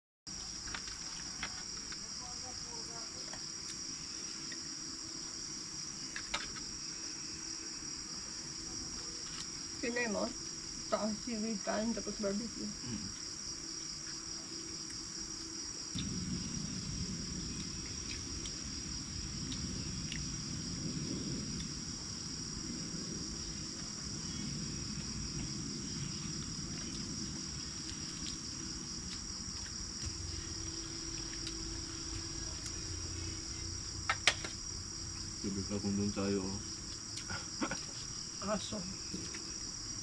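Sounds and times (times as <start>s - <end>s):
crickets chirring: 0.3s - 40.0s
steady low rumble: 16.0s - 36.2s.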